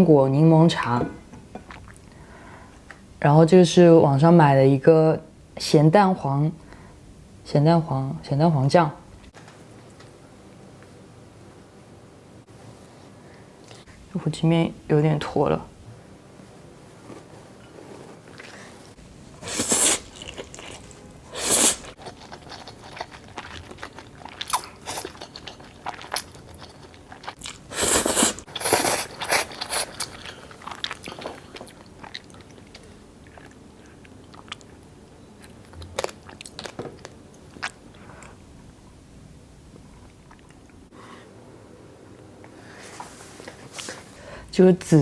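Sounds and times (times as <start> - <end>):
person slurping noodles: 19.4 - 20.7, 21.3 - 22.0, 27.7 - 30.1
chewing: 19.5 - 21.0, 21.7 - 38.4.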